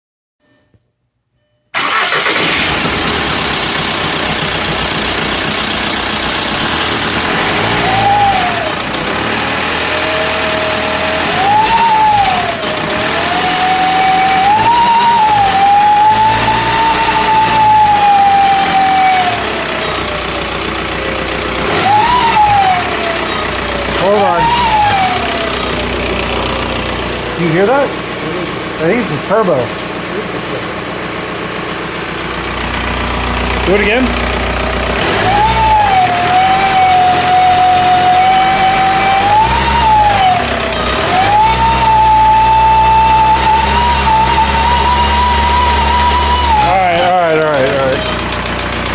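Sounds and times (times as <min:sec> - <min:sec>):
diesel engine running: 0:01.8 - 0:48.9
loud whistle following revs: 0:10.2 - 0:19.6, 0:21.6 - 0:23.3, 0:24.0 - 0:25.6, 0:35.0 - 0:47.2.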